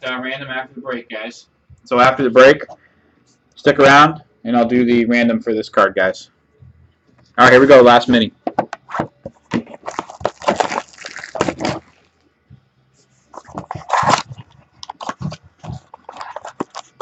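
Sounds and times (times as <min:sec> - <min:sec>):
card pack crinkling and rustling: 0:09.4 - 0:12.1, 0:13.4 - 0:17.0
cards clicking and scraping: 0:13.3 - 0:17.0.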